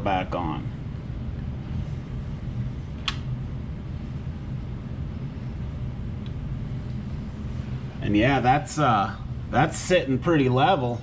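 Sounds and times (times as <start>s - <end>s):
low room hum: 0.0s - 11.0s
sharp click: 3.0s - 3.3s.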